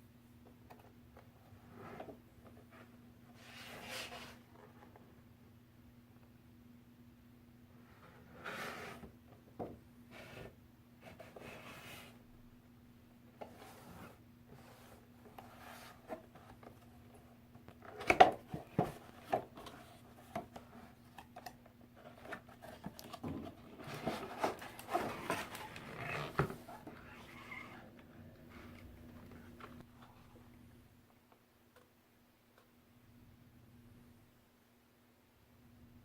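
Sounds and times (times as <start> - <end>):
faint steady hum: 0.0 - 36.0
packaging rustling: 22.3 - 26.9.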